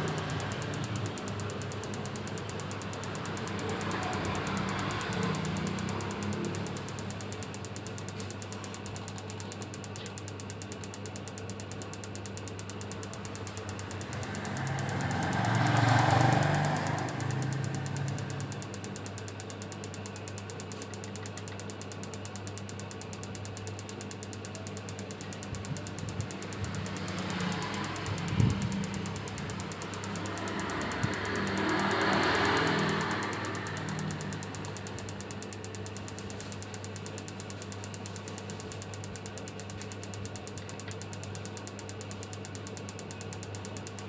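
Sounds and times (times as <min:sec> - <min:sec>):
machine humming and ticking: 0:00.0 - 0:44.0.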